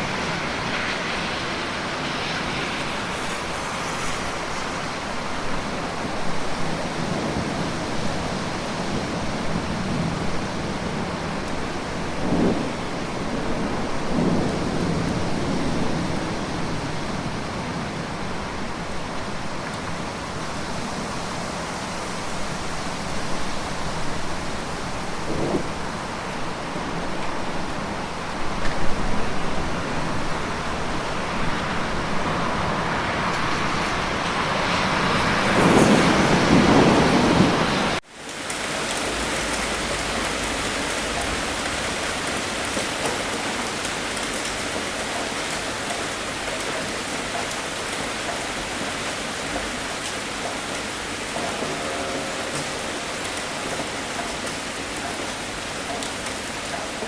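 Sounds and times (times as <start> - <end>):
low rumble of thunder: 0.0 - 20.0, 23.2 - 38.0
heavy rainfall: 0.0 - 57.0.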